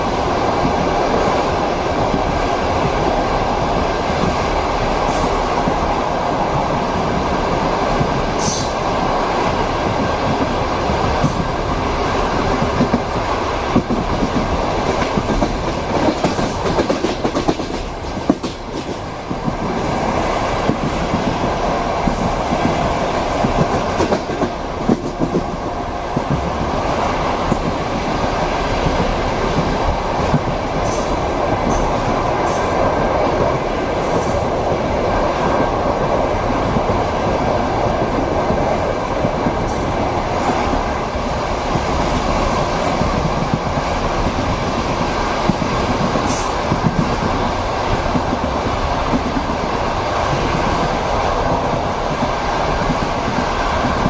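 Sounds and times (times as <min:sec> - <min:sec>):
train rolling rumble: 0:00.0 - 0:54.0
train wheels clacking over rail joints: 0:09.8 - 0:34.8.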